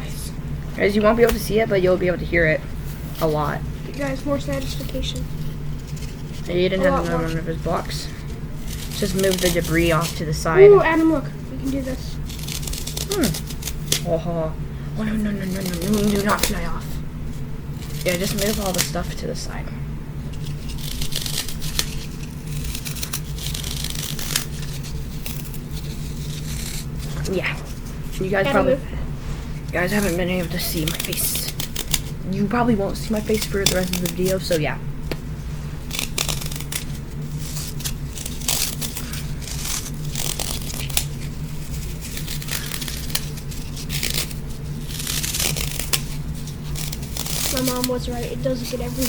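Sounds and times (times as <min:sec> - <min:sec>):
steady low hum: 0:00.0 - 0:49.0
foam block crunching by hand: 0:20.4 - 0:27.3.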